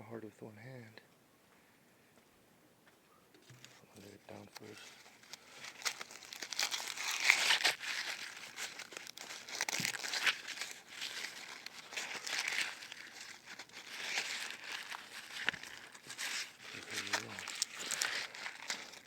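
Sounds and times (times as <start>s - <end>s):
dry corn husks being peeled: 3.5s - 19.0s.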